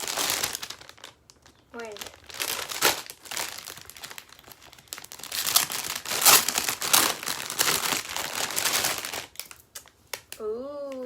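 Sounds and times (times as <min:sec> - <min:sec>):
plastic packaging crinkling: 0:00.0 - 0:10.4.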